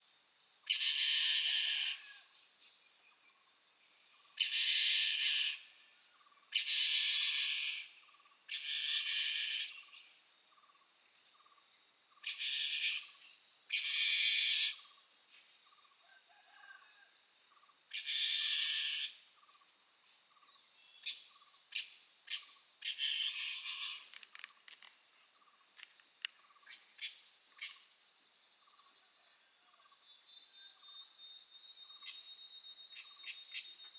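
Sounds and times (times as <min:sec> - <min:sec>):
high insect whine: 0:00.4 - 0:33.9.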